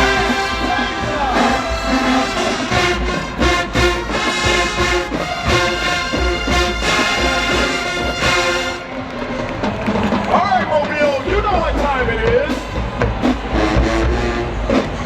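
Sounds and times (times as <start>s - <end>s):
brass playing held chords: 0.0s - 9.5s
drum beat: 0.0s - 15.0s.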